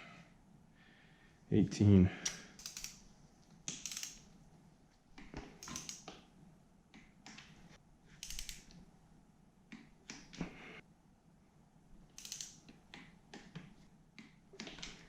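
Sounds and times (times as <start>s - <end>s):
metallic tool clicks and taps: 2.2s - 3.0s, 3.7s - 4.2s, 5.6s - 6.2s, 12.2s - 12.7s.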